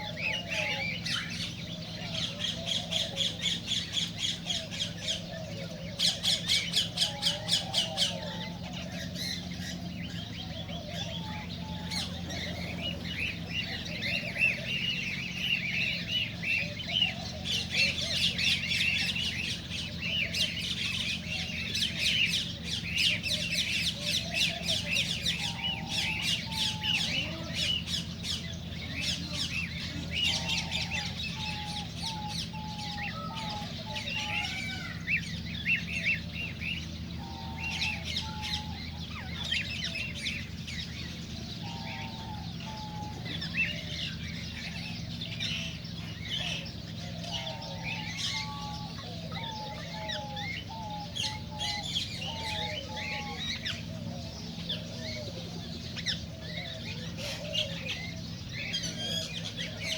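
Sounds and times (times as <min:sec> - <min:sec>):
steady low hum: 0:00.0 - 0:59.9
cockatiels chirping and whistling: 0:06.0 - 0:53.9.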